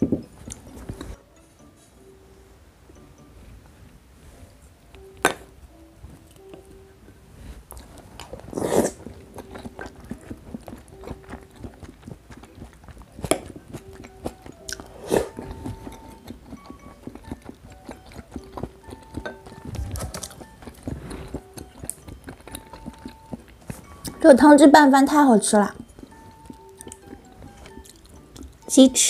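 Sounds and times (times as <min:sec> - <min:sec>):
person chewing soft food: 0:00.0 - 0:01.2, 0:06.1 - 0:24.2, 0:25.7 - 0:28.8
wet mouth sounds: 0:07.7 - 0:24.2, 0:25.7 - 0:28.7.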